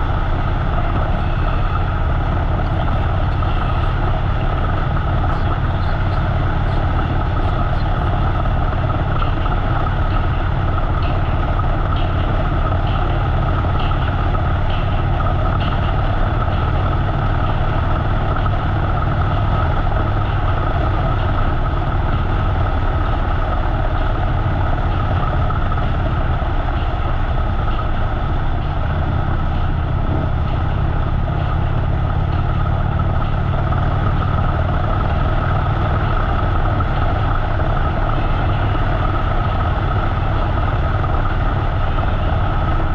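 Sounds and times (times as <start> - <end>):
motorcycle engine running: 0.0 - 42.9
road noise: 0.0 - 42.9.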